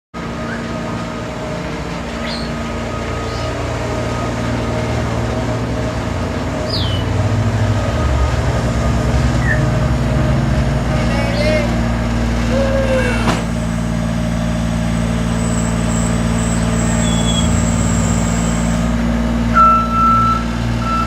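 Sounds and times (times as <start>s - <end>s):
loader engine running: 0.2s - 21.0s
short high chirps: 15.4s - 18.8s.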